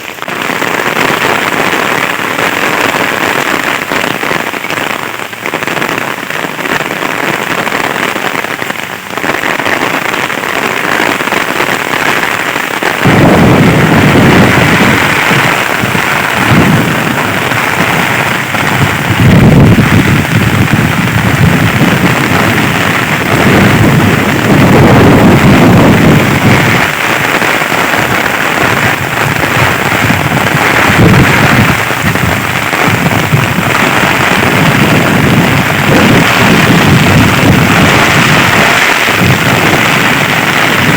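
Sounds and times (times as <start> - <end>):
heavy rain pouring: 0.0 - 40.9
deep rumbling: 13.0 - 27.0, 28.9 - 40.9.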